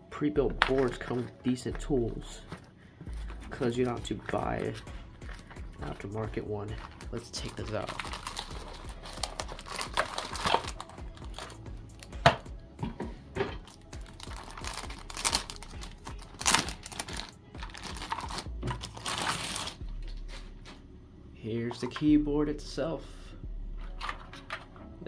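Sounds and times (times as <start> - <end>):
plastic wrapping crinkling: 2.4 - 12.1, 13.6 - 20.7.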